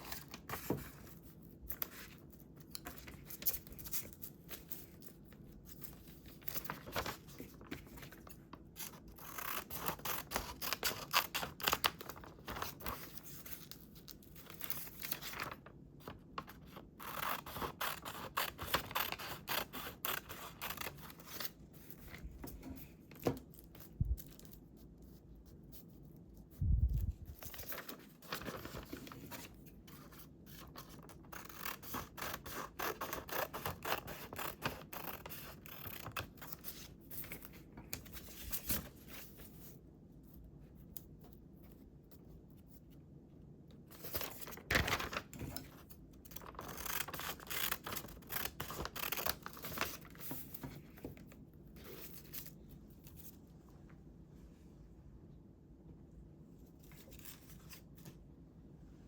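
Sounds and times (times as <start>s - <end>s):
scissors cutting paper: 6.4s - 15.5s, 16.4s - 21.9s, 27.5s - 38.7s, 44.1s - 50.6s.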